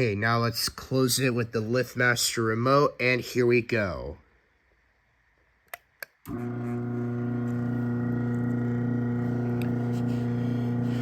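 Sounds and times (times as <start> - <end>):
garage door opener motor humming: 6.3 - 11.0.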